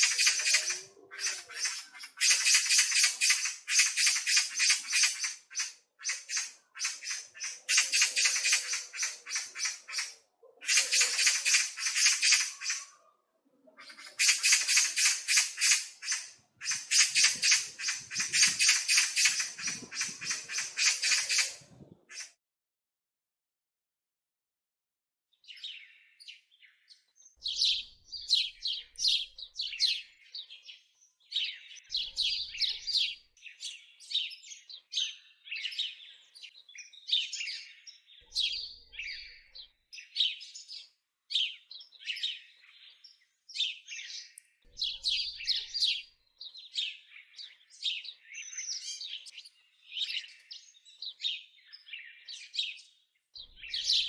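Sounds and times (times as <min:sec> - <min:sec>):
songbirds chirping and singing: 0:00.0 - 0:22.3, 0:25.3 - 0:54.0.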